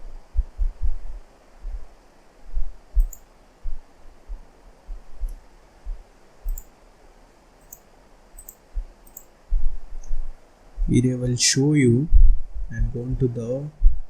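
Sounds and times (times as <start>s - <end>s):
dull low thumps: 0.0s - 6.6s, 8.8s - 11.0s, 12.1s - 14.0s
computer mouse clicking: 3.0s - 3.3s, 6.5s - 6.7s, 7.6s - 9.3s.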